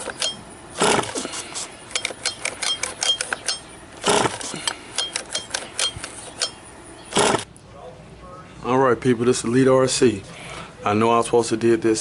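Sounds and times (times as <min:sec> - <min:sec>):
pull starter rasping whirr: 0:00.0 - 0:07.5.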